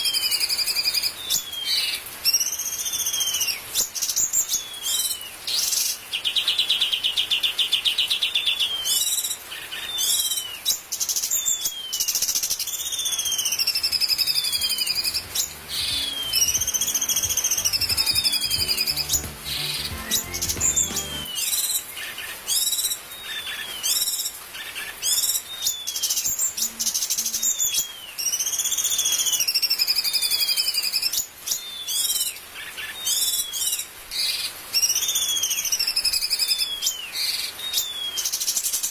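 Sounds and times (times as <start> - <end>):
bird singing whistles and trills: 8.1 - 19.2, 34.8 - 38.5.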